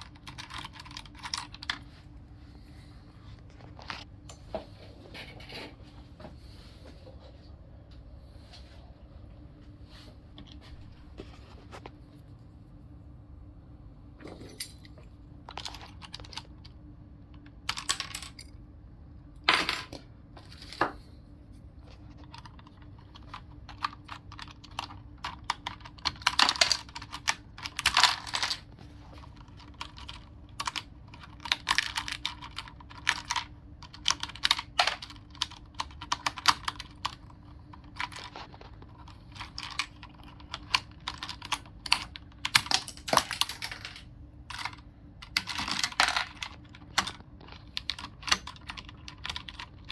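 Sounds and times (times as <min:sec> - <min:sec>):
keyboard clicking and clattering: 0:00.0 - 0:01.9, 0:15.4 - 0:18.5, 0:21.9 - 0:49.9
faint steady hum: 0:00.0 - 0:49.9.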